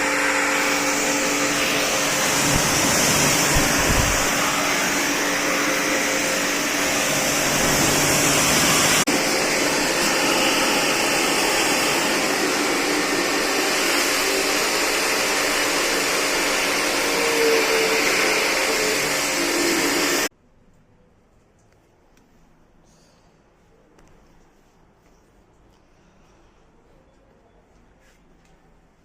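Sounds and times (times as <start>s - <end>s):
pressure washer hissing: 0.0s - 20.3s.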